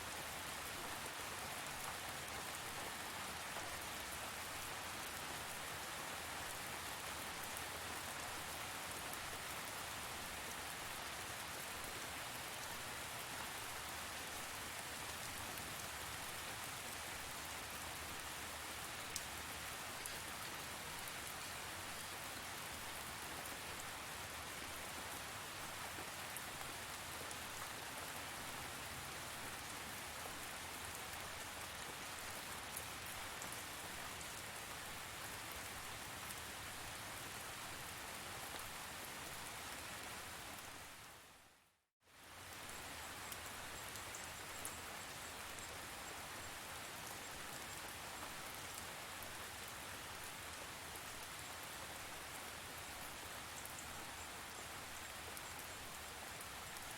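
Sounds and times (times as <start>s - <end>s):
steady rain falling: 0.0s - 56.9s.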